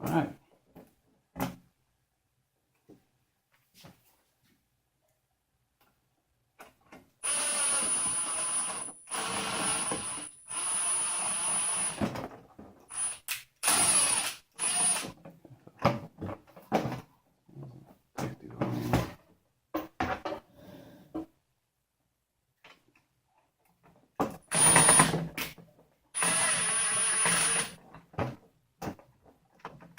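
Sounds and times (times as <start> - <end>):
power screwdriver whining: 7.2 - 12.0, 12.9 - 15.1, 24.5 - 25.1, 26.2 - 27.8.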